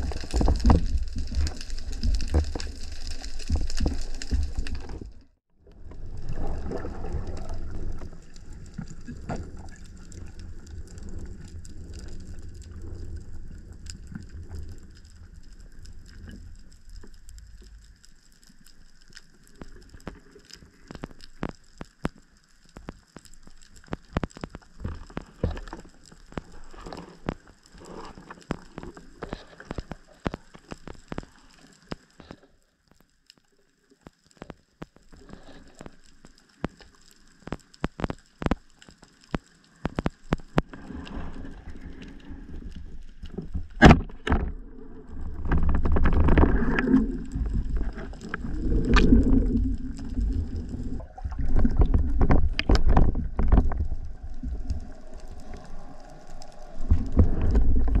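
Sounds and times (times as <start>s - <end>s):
underwater crackling and clicking: 0.0s - 58.0s
faint steady hiss: 5.7s - 58.0s.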